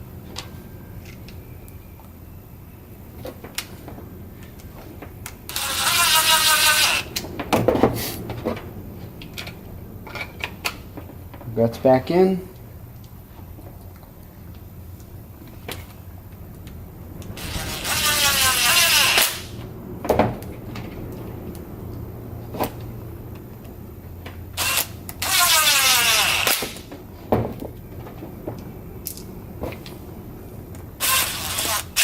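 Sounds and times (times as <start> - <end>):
impact driver whining: 5.5 - 7.1, 17.4 - 19.6, 24.6 - 26.8, 31.0 - 32.0.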